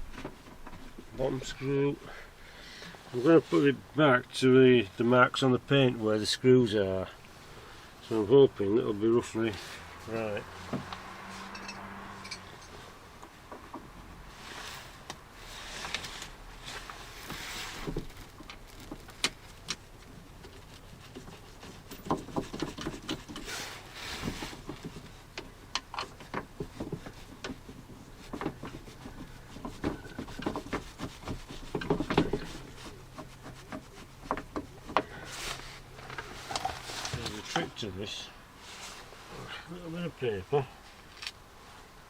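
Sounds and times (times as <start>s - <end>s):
tools being handled: 11.3s - 12.8s.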